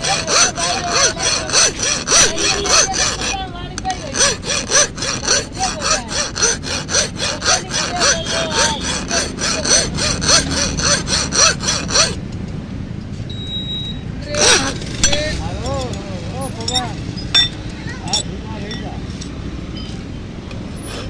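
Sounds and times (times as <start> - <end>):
hand saw rasping strokes: 0.0 - 12.2, 14.3 - 16.0.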